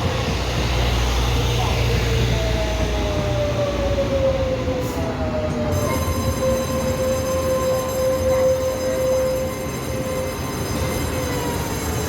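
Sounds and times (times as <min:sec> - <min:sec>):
train running rumble: 0:00.0 - 0:12.0
train whine: 0:00.0 - 0:12.0.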